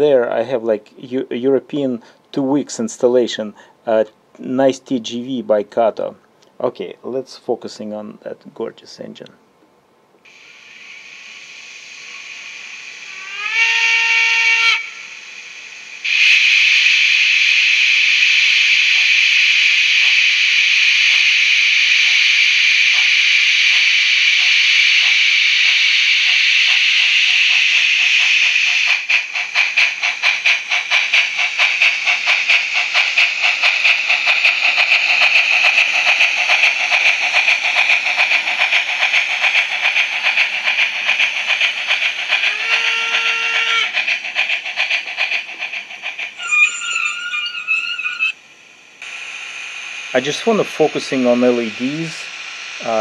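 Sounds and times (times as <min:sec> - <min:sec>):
steam hiss: 0:10.2 - 0:53.0
steam locomotive chuffing: 0:10.3 - 0:53.0
short train whistle: 0:13.2 - 0:15.1, 0:42.5 - 0:43.9.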